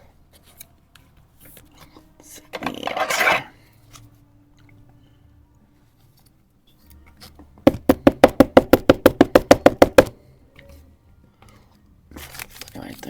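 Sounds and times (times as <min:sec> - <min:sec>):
rapid sharp knocks: 0:07.7 - 0:10.1.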